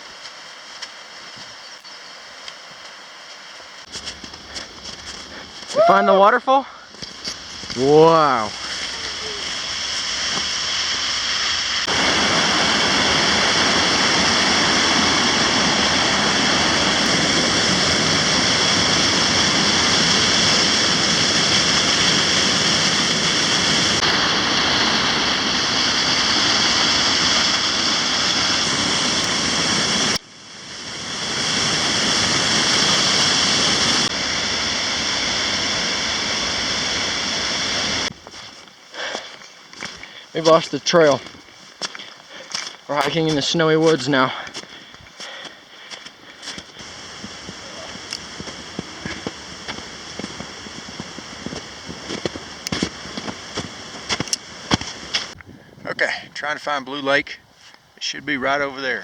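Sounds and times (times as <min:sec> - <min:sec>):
waterfall rushing: 0:05.7 - 0:38.1, 0:46.8 - 0:55.4.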